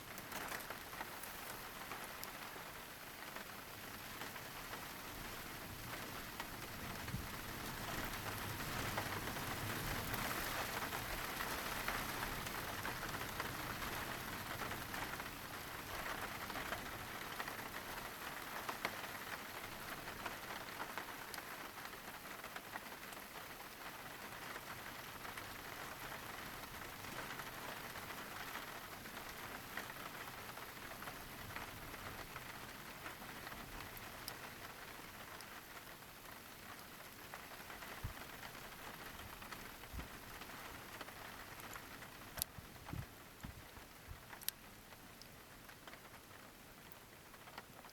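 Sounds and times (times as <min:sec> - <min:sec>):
raindrops clicking: 0:00.0 - 0:02.6, 0:36.6 - 0:47.9
steady rain falling: 0:00.0 - 0:47.9.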